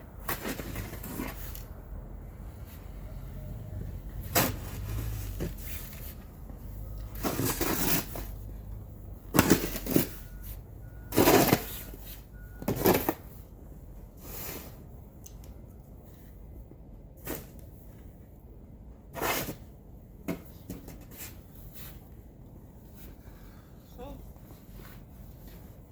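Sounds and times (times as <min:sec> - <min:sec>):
snow shovel scraping snow: 0:07.2 - 0:08.3.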